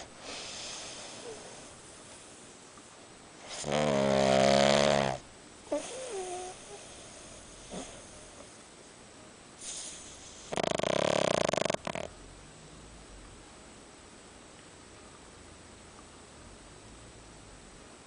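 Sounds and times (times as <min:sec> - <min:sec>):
dog snoring: 0:00.0 - 0:01.7, 0:03.4 - 0:08.6, 0:09.6 - 0:13.0.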